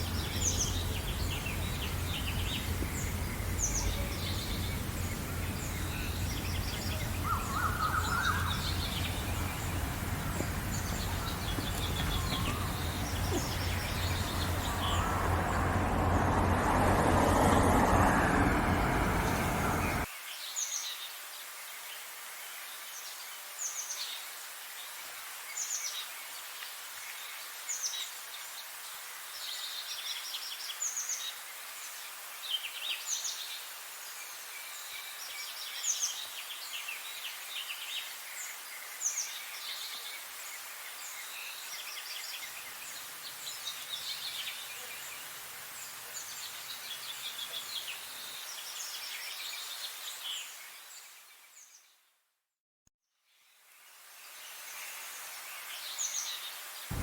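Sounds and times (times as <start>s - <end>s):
low hum: 0.0s - 20.1s
steady background rush: 0.0s - 20.1s
small birds chirping and singing: 0.0s - 21.0s, 55.5s - 57.0s.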